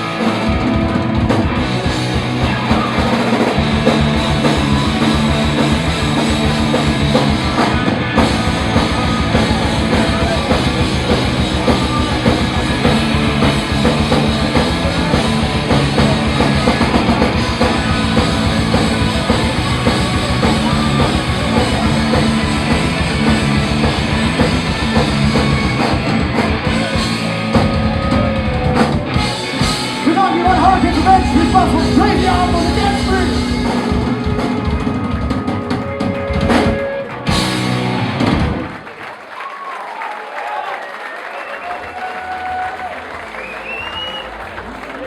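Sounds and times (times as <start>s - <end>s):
fast drum beat: 0.0s - 38.8s
rock band playing live: 0.0s - 38.9s.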